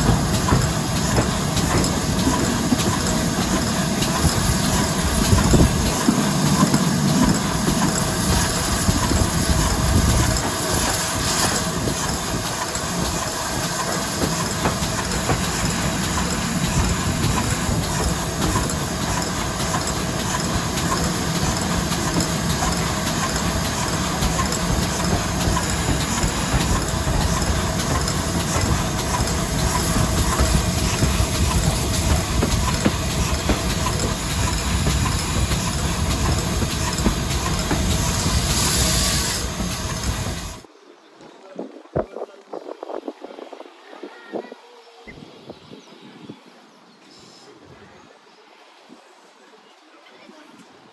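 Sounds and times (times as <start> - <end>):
train wheels on rails: 0.0 - 40.7.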